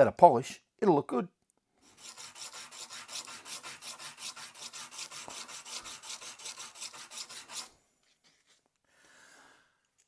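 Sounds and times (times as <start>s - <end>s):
hand sanding on steel: 1.8s - 7.7s.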